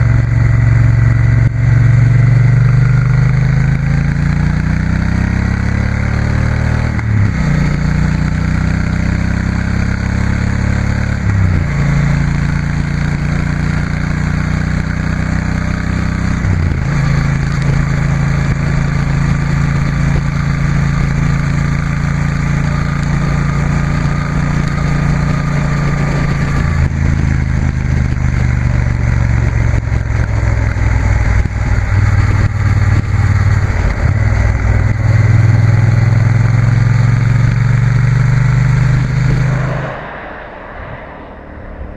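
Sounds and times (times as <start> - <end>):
motorcycle engine riding: 0.0 - 40.1.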